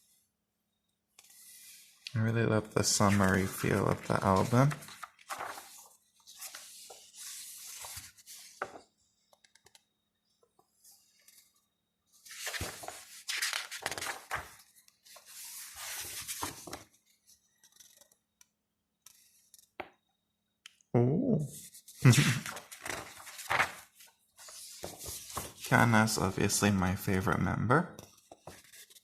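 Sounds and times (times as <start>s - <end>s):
paper and card rustling: 2.8s - 8.8s, 12.3s - 17.0s, 21.6s - 26.6s, 28.0s - 29.0s.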